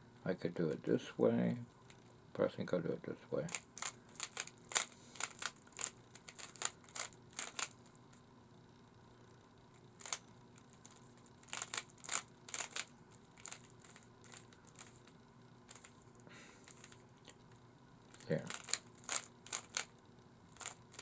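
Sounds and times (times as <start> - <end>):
plastic puzzle cube clicking: 3.5 - 7.7, 10.9 - 15.0, 18.1 - 19.9, 20.6 - 21.0.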